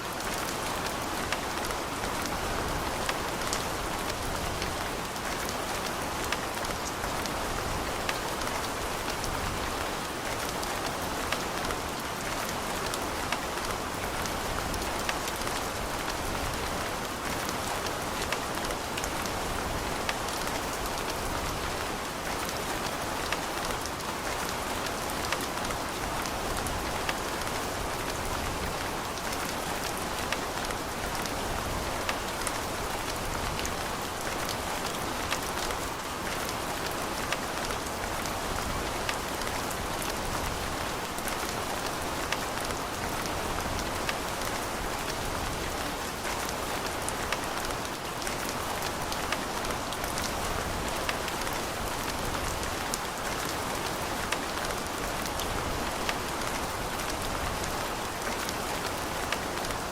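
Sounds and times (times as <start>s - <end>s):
rain on hard surfaces: 0.0s - 59.9s.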